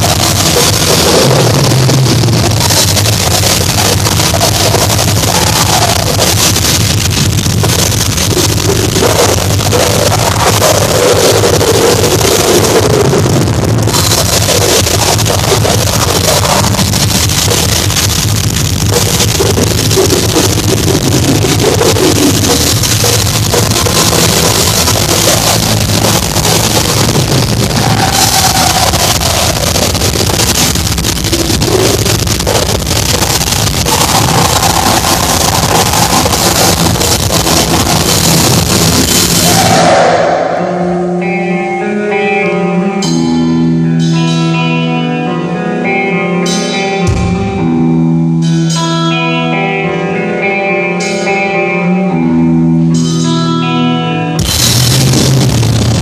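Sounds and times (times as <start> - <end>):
heavy metal band playing: 0.0 - 56.0
held melodic guitar notes: 40.6 - 54.4.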